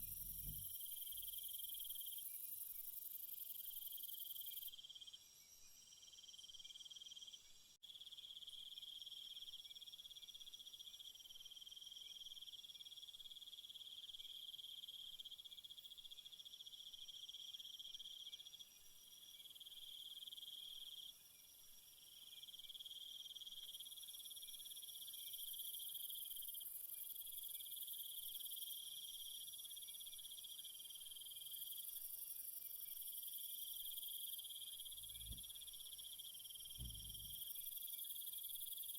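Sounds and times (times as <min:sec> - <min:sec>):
crickets chirring: 0:00.0 - 0:05.1, 0:22.7 - 0:38.9.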